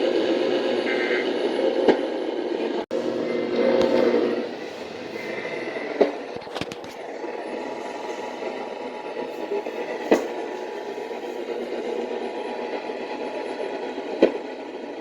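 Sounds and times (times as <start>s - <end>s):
radio static: 2.9s - 12.8s.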